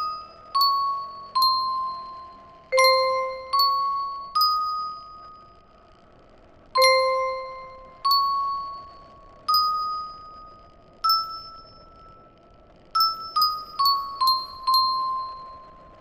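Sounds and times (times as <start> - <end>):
bell-like chime notes: 0.0 - 5.5, 6.8 - 12.4.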